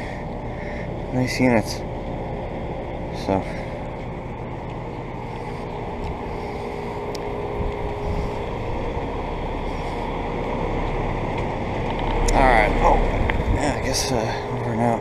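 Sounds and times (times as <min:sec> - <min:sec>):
heat pump fans running: 0:00.0 - 0:15.0.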